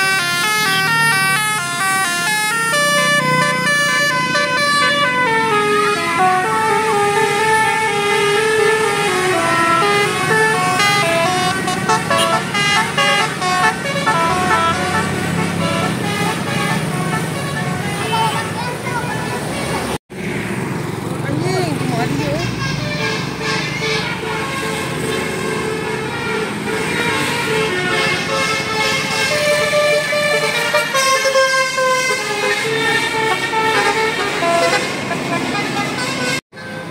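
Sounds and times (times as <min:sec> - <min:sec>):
bus musical horn melody: 0:00.0 - 0:18.7, 0:22.3 - 0:36.9.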